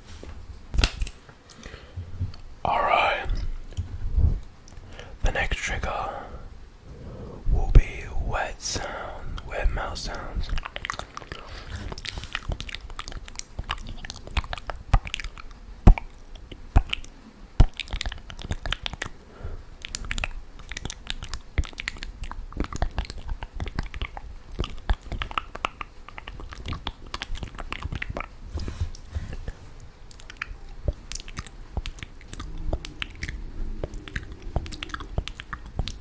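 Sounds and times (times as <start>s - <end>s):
wet mouth clicks and smacks: 8.8s - 19.2s, 19.8s - 36.0s.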